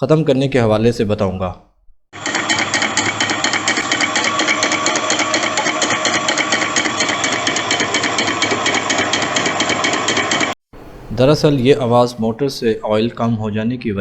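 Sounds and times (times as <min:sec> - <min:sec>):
water pump knocking rattle: 0:02.2 - 0:12.1.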